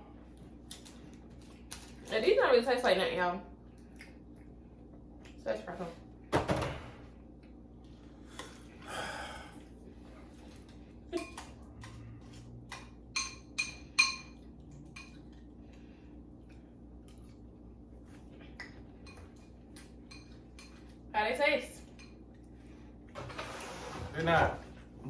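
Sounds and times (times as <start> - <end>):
metal spoon clinking on bowl: 13.1 - 14.4.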